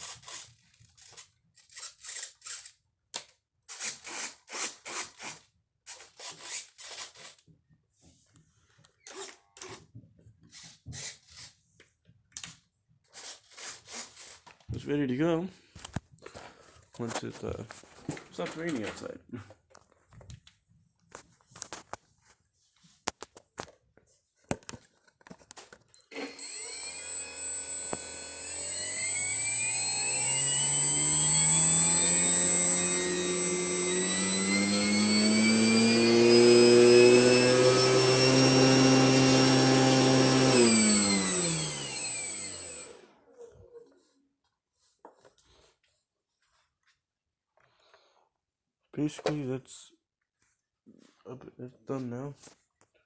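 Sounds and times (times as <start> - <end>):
model plane motor and propeller whine: 26.0 - 43.0.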